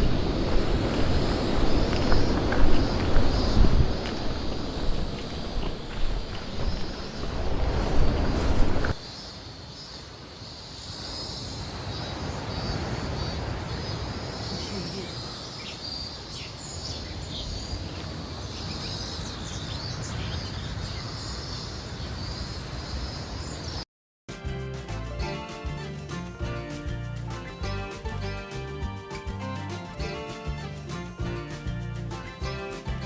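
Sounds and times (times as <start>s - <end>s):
steady rushing noise: 0.0s - 9.2s
insects trilling: 0.0s - 23.8s
bird chirps: 9.0s - 23.8s.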